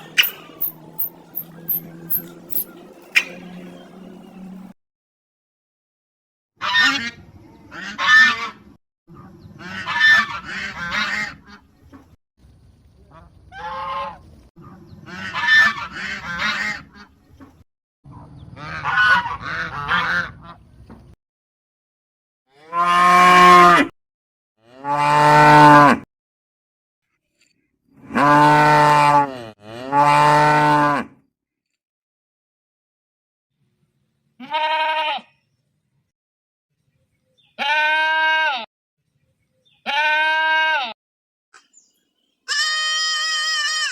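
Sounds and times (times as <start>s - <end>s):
geese honking: 0.0s - 4.7s.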